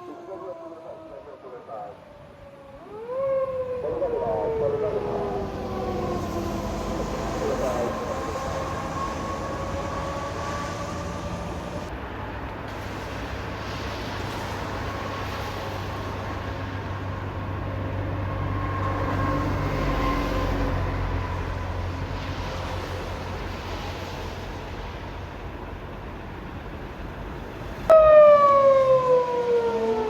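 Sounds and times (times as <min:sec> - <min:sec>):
faint wavering siren: 0:00.0 - 0:11.9, 0:17.7 - 0:24.4, 0:27.9 - 0:30.0
traffic rumble: 0:00.0 - 0:30.0
vehicle passing close: 0:03.6 - 0:11.9.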